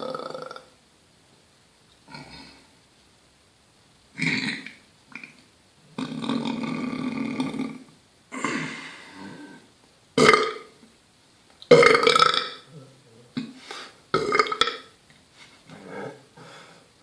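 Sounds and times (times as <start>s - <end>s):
person belching: 0.0s - 0.7s, 2.1s - 2.6s, 4.2s - 5.3s, 6.0s - 10.8s, 11.7s - 13.5s, 14.1s - 14.9s.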